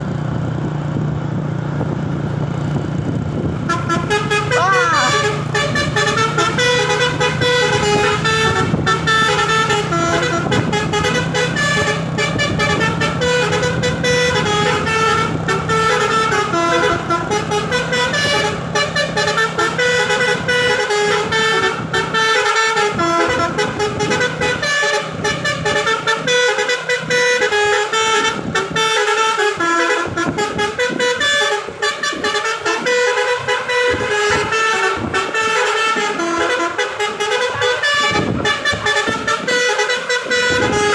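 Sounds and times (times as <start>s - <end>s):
low engine hum: 0.0s - 40.9s
multi-tone horn melody: 3.5s - 40.9s.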